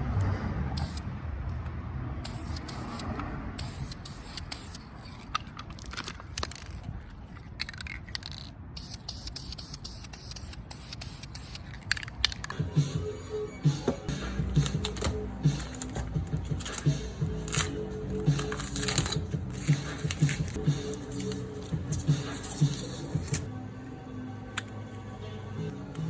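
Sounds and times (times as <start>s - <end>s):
spray paint can hissing: 0.8s - 1.0s, 2.2s - 4.9s, 8.8s - 12.0s.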